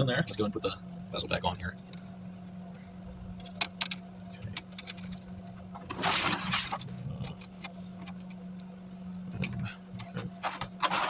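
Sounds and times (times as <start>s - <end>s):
steady low hum: 0.0s - 11.0s
rustling scrape: 5.9s - 6.8s, 10.3s - 11.0s.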